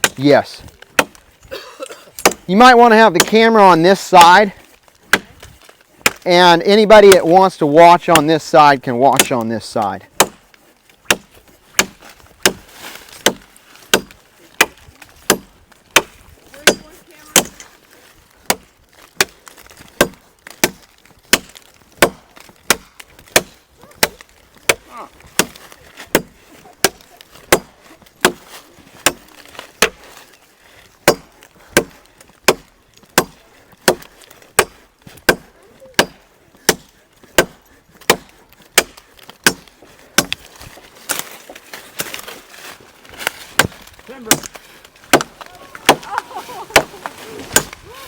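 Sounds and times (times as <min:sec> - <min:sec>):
machete chopping into wood: 0:00.0 - 0:00.2, 0:00.8 - 0:01.2, 0:02.2 - 0:02.5, 0:05.0 - 0:06.2, 0:10.1 - 0:17.6, 0:18.4 - 0:30.2, 0:31.0 - 0:42.4, 0:43.1 - 0:47.8.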